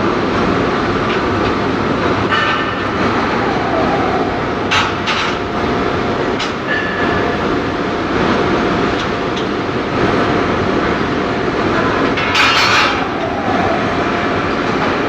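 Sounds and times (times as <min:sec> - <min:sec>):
industrial machine running: 0:00.0 - 0:15.0.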